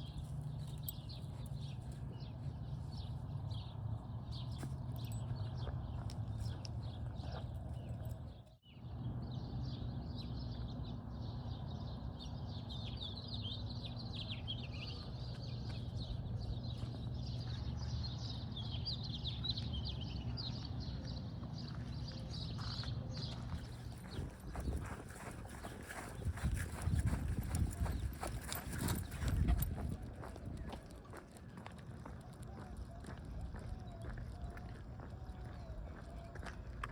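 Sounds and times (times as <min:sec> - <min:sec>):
small birds chirping: 0:09.2 - 0:36.9.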